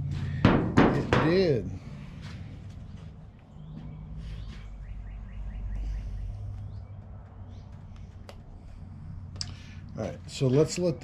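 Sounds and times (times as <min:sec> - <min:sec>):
bird chirping: 0:03.0 - 0:08.9.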